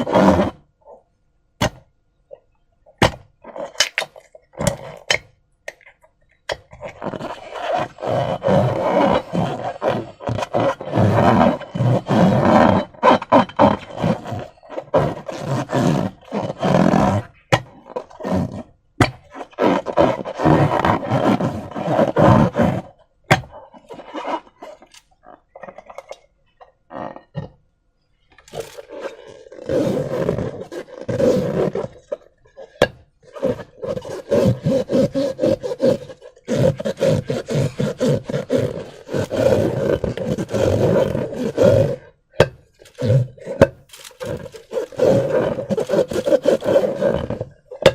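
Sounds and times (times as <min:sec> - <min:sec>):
hands handling balloons and slime: 0:35.6 - 0:47.9.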